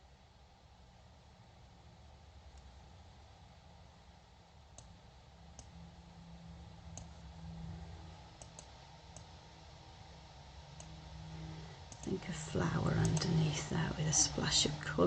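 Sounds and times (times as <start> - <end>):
steady low hum: 0.0 - 15.0
faint computer mouse clicks: 5.5 - 5.7, 6.9 - 7.2, 8.4 - 9.3.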